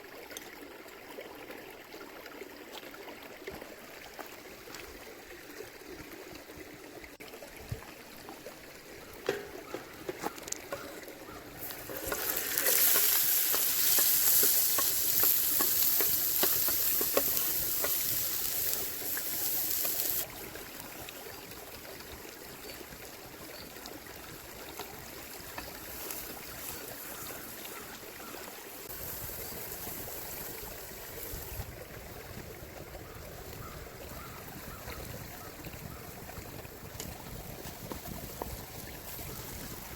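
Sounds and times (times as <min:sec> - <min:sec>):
river water flowing: 0:00.0 - 0:39.9
soft sizzling: 0:11.6 - 0:20.3, 0:25.0 - 0:31.6
loud sizzle of frying in oil: 0:11.6 - 0:20.4, 0:24.1 - 0:31.7.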